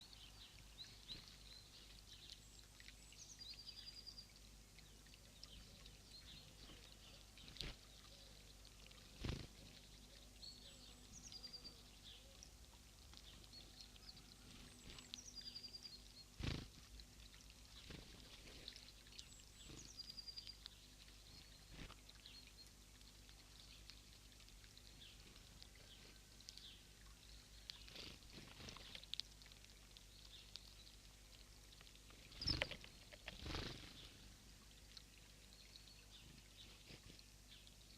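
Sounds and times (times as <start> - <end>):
small birds calling: 0.0 - 37.9.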